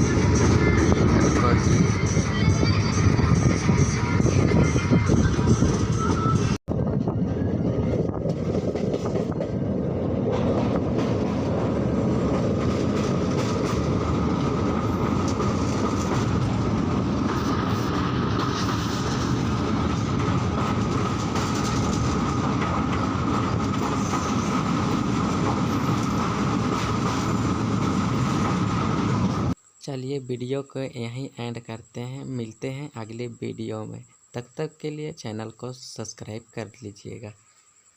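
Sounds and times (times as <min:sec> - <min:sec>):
train running rumble: 0:00.0 - 0:29.6.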